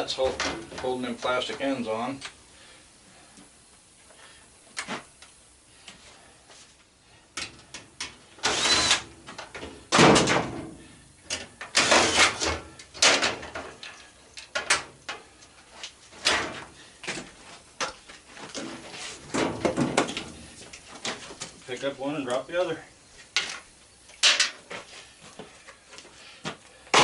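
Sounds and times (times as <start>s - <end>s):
metal and plastic parts clanking: 9.3s - 10.7s, 11.3s - 15.2s, 16.2s - 16.6s.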